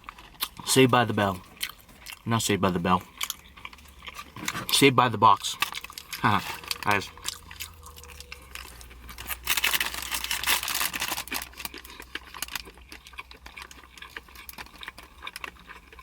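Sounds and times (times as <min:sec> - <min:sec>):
food packaging crinkling: 0:00.0 - 0:16.0.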